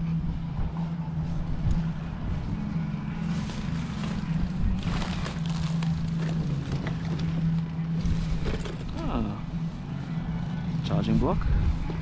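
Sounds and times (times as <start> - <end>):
items rustling: 3.2 - 9.9.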